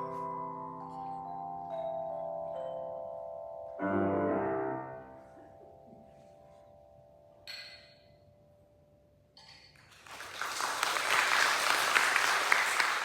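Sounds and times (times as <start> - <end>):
audience applause: 9.9 - 13.0.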